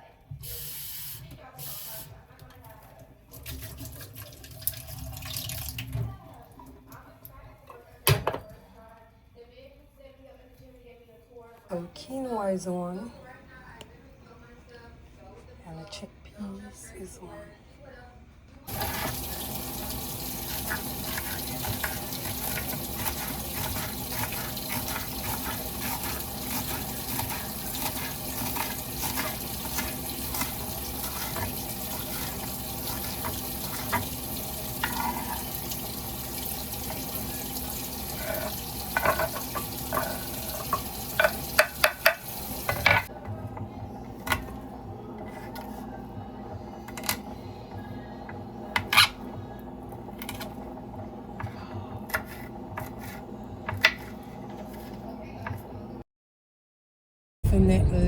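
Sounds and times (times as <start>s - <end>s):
water running from tap into sink: 3.3s - 6.2s, 18.7s - 43.1s.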